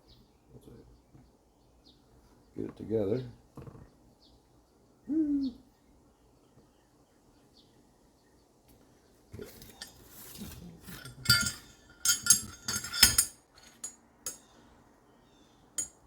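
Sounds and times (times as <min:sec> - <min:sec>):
shuffle of handling: 0:09.3 - 0:13.9
metal parts clinking: 0:09.4 - 0:14.4, 0:15.8 - 0:16.0.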